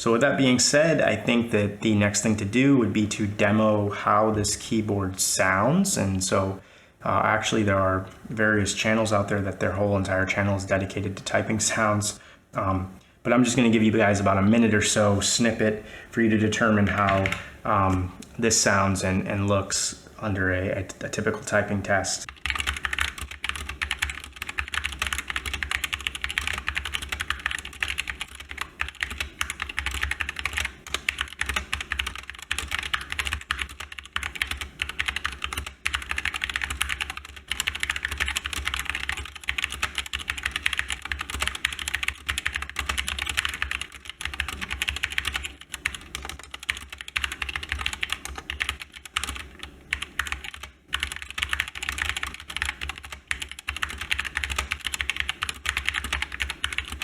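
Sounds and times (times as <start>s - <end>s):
fast typing on mechanical keyboard: 16.9s - 17.4s, 22.3s - 57.0s.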